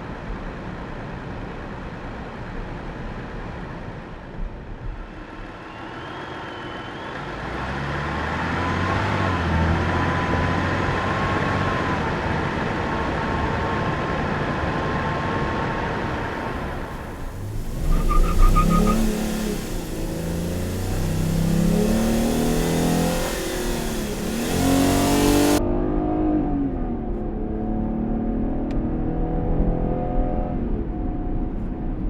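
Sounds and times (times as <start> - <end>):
road noise: 1.6 - 25.6
car engine running: 15.4 - 25.6
faint wavering whine: 16.1 - 25.6.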